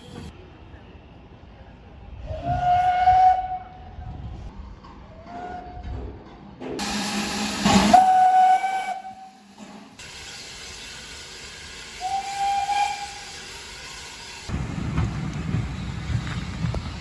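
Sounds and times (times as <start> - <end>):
steam locomotive whistle blasts: 6.8 - 10.4, 11.9 - 14.4
steady hiss of steam: 6.8 - 17.0.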